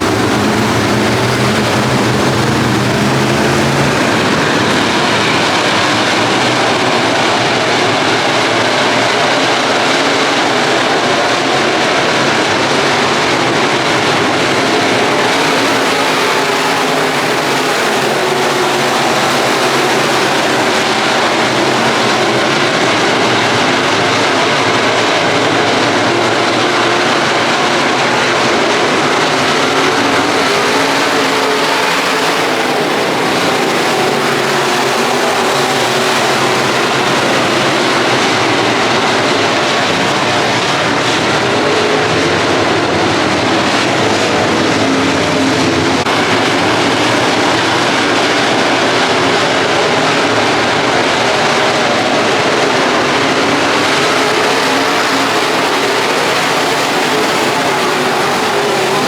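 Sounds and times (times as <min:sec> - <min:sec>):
race car engines at speed: 0:00.0 - 0:59.0.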